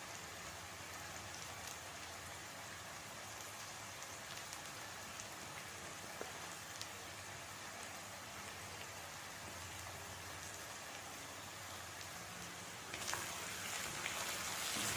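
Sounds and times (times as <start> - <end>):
food sizzling in hot oil: 12.8 - 14.9.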